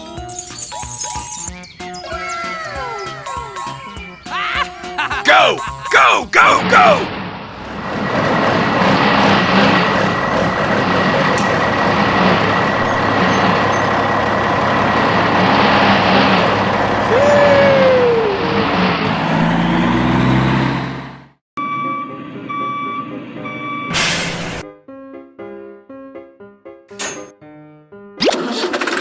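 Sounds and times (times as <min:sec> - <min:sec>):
heavy truck engine running: 0:03.2 - 0:24.6.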